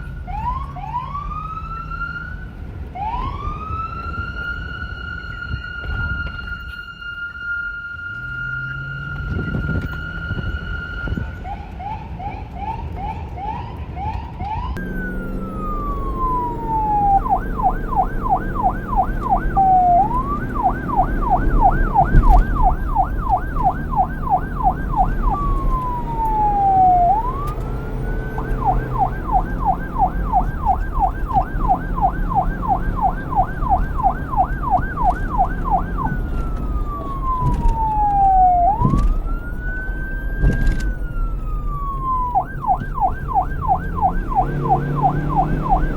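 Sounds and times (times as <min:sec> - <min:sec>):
police siren wail and yelp: 0:00.0 - 0:45.9
high siren warble: 0:03.0 - 0:45.9
low traffic rumble: 0:14.7 - 0:45.9.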